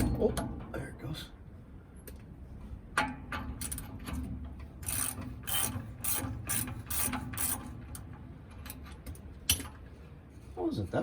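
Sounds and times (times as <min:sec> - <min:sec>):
ratchet wrench clicking: 0:04.8 - 0:07.7.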